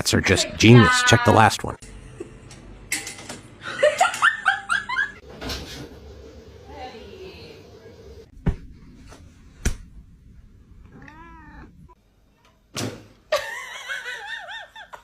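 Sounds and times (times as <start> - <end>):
cat meowing: 10.8 - 12.0.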